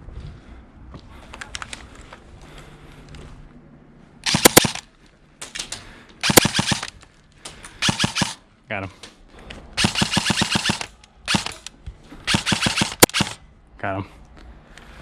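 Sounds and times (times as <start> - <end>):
airsoft gun bursts: 4.2 - 4.8, 6.2 - 7.0, 7.8 - 8.4, 9.8 - 11.7, 12.3 - 13.4.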